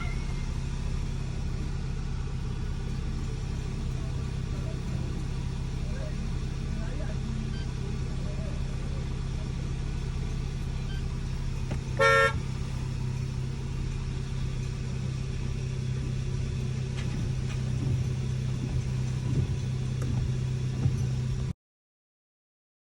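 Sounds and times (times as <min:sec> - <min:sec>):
car horn toot: 0:00.0 - 0:00.6, 0:11.8 - 0:12.6
car engine idling: 0:00.0 - 0:21.5.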